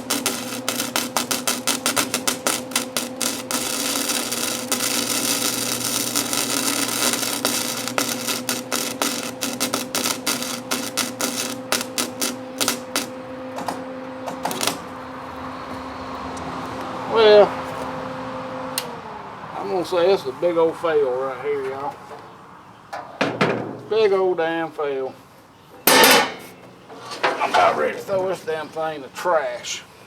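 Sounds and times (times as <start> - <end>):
welding arc crackling and popping: 0.0 - 14.9
welder humming: 0.0 - 20.3, 25.8 - 29.1.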